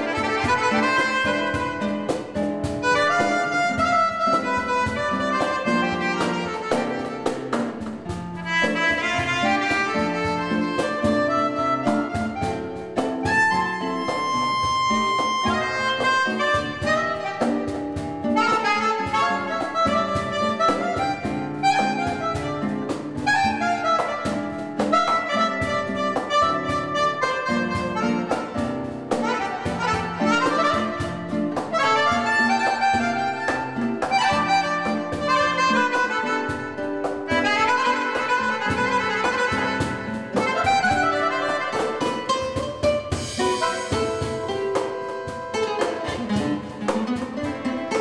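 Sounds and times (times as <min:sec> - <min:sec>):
acoustic guitar: 0:00.0 - 0:48.0
free-reed keyboard melody: 0:00.0 - 0:48.0
percussion: 0:00.0 - 0:48.0.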